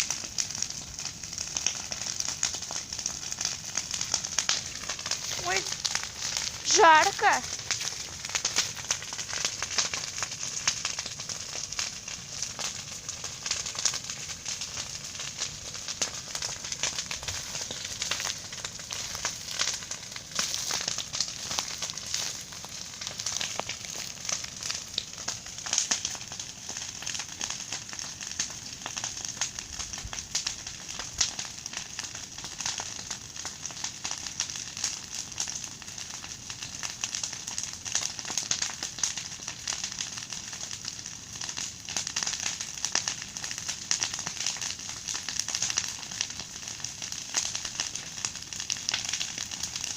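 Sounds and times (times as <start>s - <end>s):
bonfire crackling and popping: 0.0s - 49.9s.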